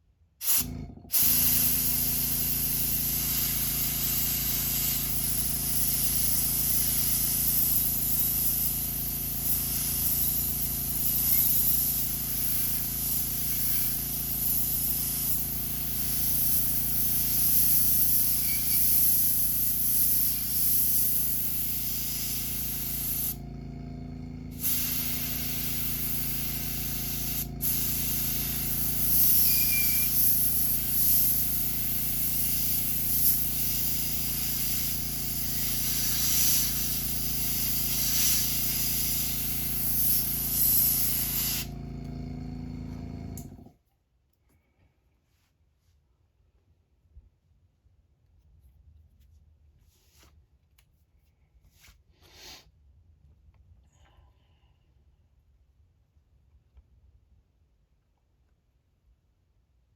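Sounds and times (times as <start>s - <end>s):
airbrush spraying hiss: 0.4s - 23.6s, 24.5s - 41.8s.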